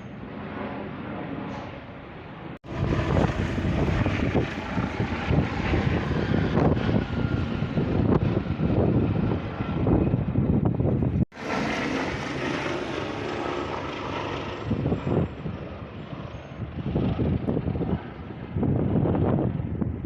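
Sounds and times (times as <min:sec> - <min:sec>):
helicopter rotor beating: 0:00.0 - 0:20.0
helicopter turbine noise: 0:00.0 - 0:20.0.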